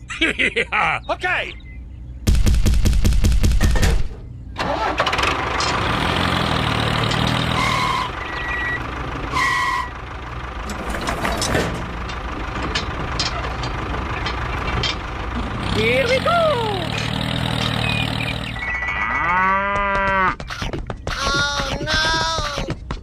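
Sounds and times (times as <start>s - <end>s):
tractor engine cranking and running: 4.6s - 19.0s.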